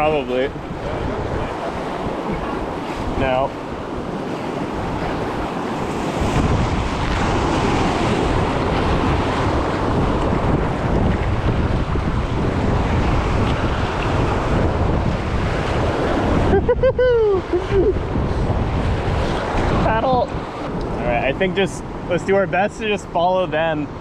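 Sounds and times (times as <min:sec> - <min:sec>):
wind buffeting microphone: 0:00.0 - 0:24.0
river water rushing: 0:00.6 - 0:10.9.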